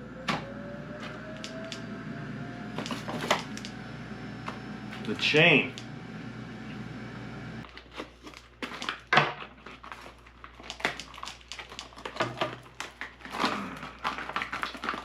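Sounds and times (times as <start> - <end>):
plastic packaging crinkling: 7.6 - 15.0.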